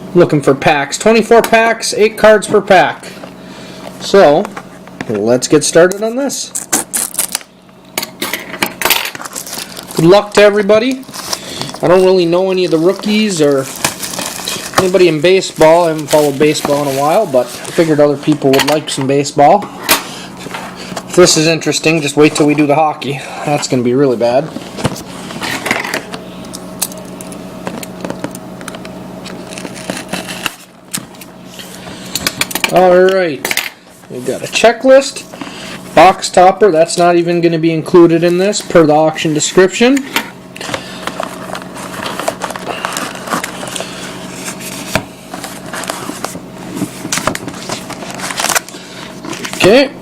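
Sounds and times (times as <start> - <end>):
steady low hum: 0.0 - 50.0
cardboard and card packs rustling: 8.9 - 22.7, 27.1 - 37.2, 37.9 - 49.9.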